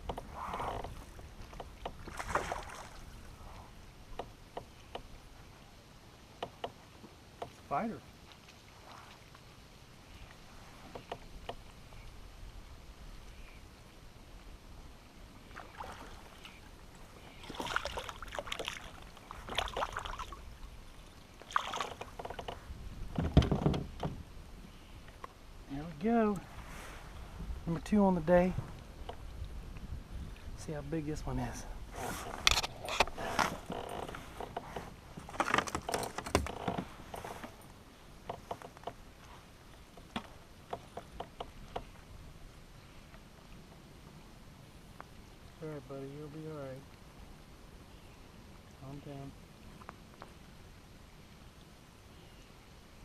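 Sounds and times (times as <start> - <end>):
fishing gear knocking and rattling: 21.8 - 24.2, 32.2 - 37.6, 38.2 - 39.0.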